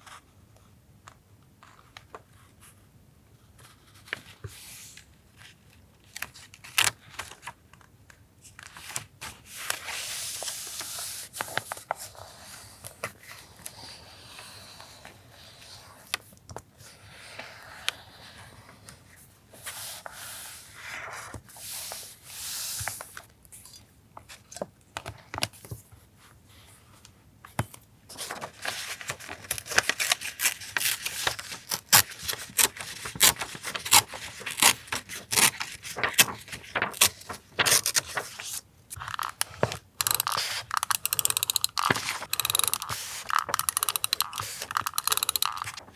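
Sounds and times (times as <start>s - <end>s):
paper tearing and crinkling: 29.5s - 38.4s
sharp clicks and taps: 39.2s - 45.9s.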